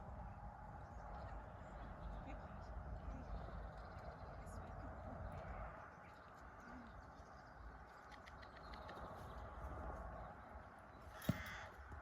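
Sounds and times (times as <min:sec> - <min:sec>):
horse hooves walking: 0:11.0 - 0:12.0.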